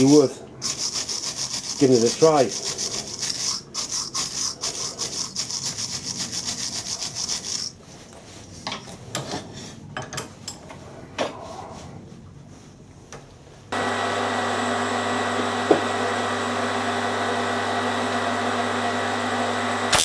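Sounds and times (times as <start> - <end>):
hand tool scrubbing metal pipe: 0.0 - 7.8.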